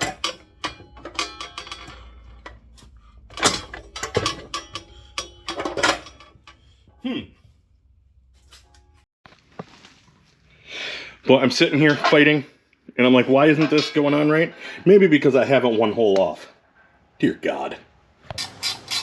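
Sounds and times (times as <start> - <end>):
metal parts and tools clanking: 0.0 - 9.0, 13.2 - 14.5.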